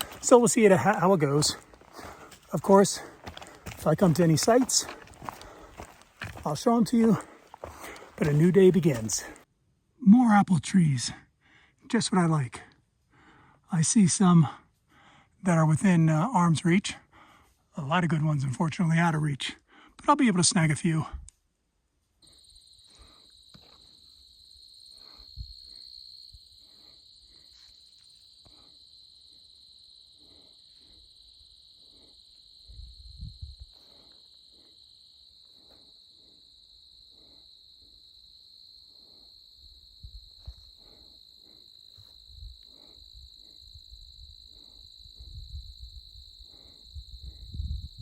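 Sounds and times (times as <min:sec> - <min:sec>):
footsteps on a trail: 0:00.0 - 0:09.4
insect chorus trilling: 0:00.0 - 0:09.4, 0:22.2 - 0:48.0.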